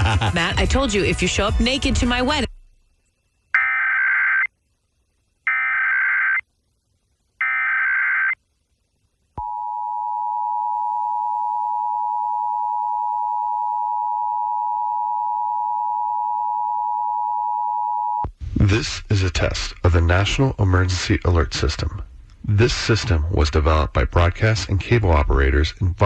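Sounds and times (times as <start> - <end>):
screechy digital data bursts: 3.5 - 4.5.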